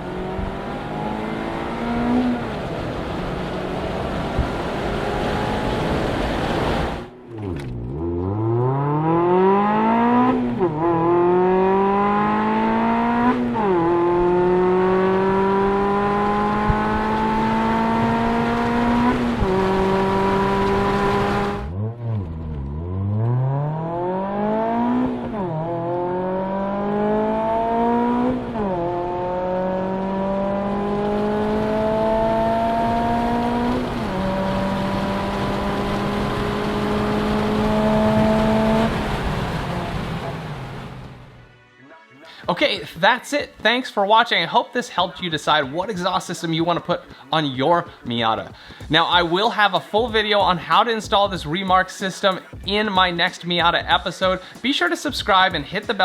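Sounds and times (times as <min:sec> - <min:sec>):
car engine accelerating through gears: 0:00.0 - 0:41.4.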